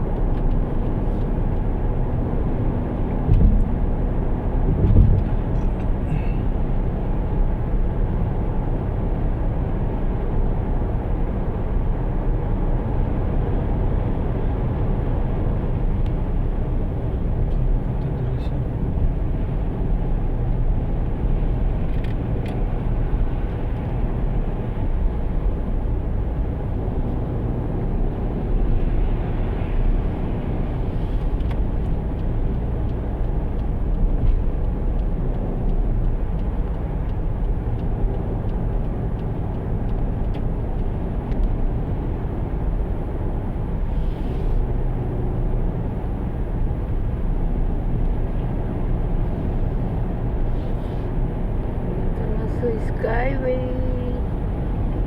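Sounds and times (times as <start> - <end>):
car engine rumble: 0.0 - 55.0
road noise: 0.0 - 55.0.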